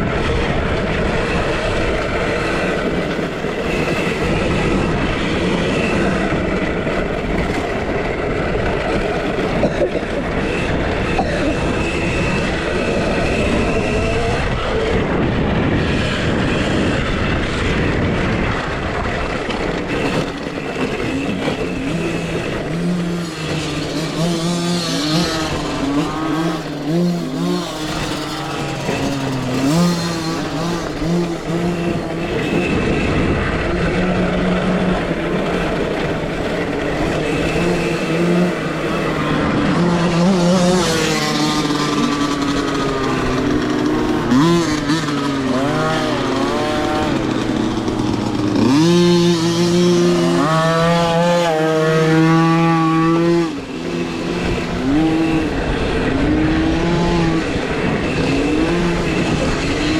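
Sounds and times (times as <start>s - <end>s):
motocross bikes racing: 0.0s - 59.9s.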